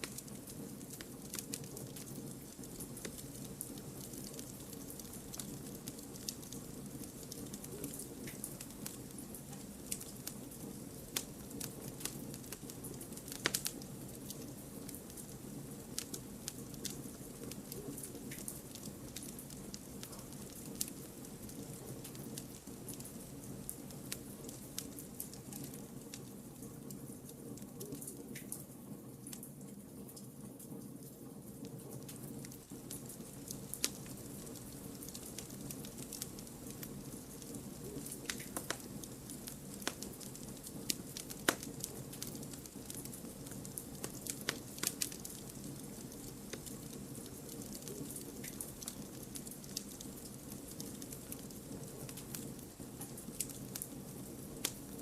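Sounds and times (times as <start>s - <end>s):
campfire logs crackling: 0.0s - 27.4s, 32.0s - 55.0s
low rush of flames: 0.0s - 27.7s, 31.4s - 55.0s
sharp pops of burning wood: 11.1s - 15.0s, 32.8s - 54.0s.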